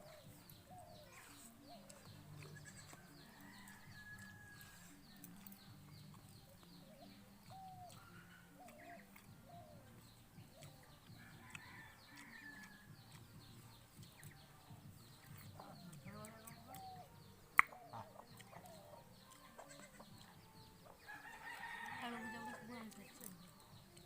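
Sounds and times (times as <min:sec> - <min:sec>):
chicks chirping: 0:00.0 - 0:21.5
hen clucking: 0:15.5 - 0:21.0.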